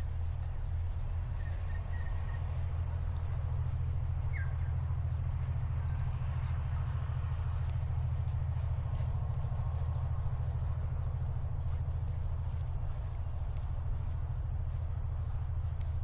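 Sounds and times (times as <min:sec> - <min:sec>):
low rumble: 0:00.0 - 0:16.0
faint bird chirps: 0:01.3 - 0:02.8, 0:03.4 - 0:06.2.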